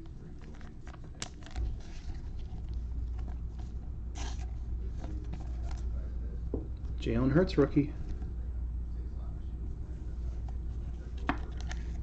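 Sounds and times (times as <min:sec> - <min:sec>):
cards scraping and clicking: 0:00.0 - 0:05.9, 0:10.4 - 0:12.0.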